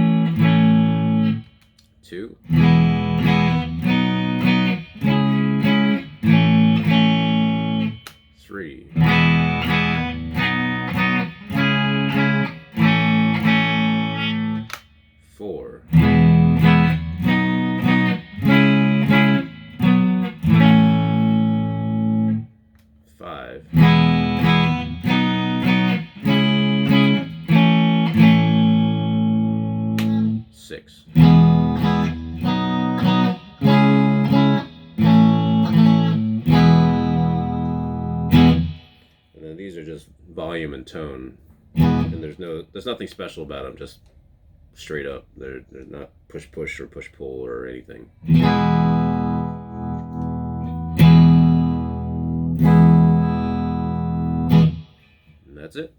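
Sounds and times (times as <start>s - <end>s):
electric guitar strumming chords: 0.0s - 1.8s, 2.4s - 22.6s, 23.4s - 39.2s, 41.7s - 42.7s, 48.2s - 55.4s.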